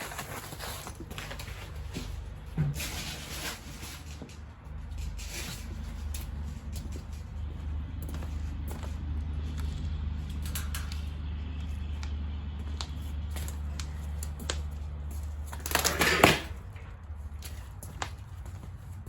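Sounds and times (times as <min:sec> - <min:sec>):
loud scraping rustle: 0:00.0 - 0:07.5, 0:15.4 - 0:16.7
steady low hum: 0:03.8 - 0:15.6
clicks and knocks of parts handled: 0:09.6 - 0:18.3.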